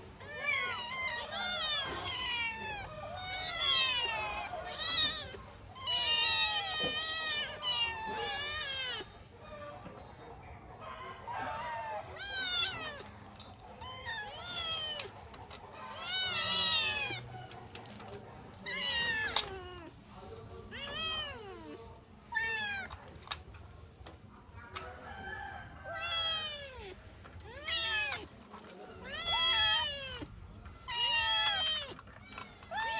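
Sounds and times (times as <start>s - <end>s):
kittens meowing: 0.2s - 9.3s, 11.6s - 20.0s, 20.6s - 23.0s, 25.8s - 32.9s.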